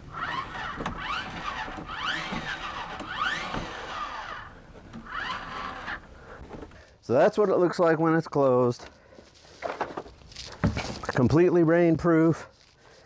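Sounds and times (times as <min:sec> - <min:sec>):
fan lid motor squealing: 0:00.0 - 0:06.8.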